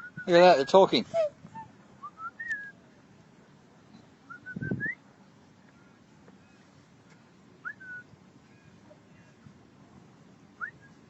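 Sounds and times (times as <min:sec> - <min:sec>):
swans whistling calls: 0:00.0 - 0:02.8.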